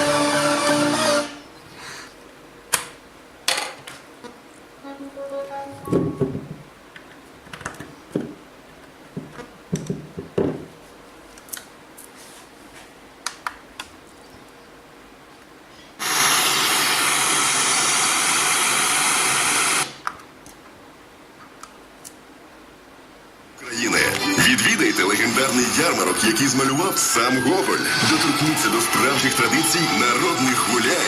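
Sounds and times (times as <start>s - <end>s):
radio static hiss: 16.0s - 20.0s, 23.5s - 31.0s.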